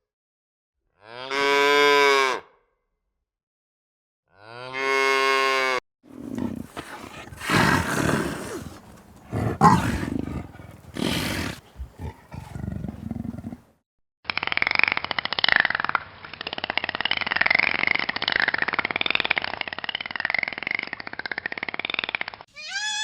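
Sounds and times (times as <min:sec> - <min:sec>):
cow mooing: 0:06.1 - 0:13.6
rough animal vocalising: 0:06.1 - 0:13.6.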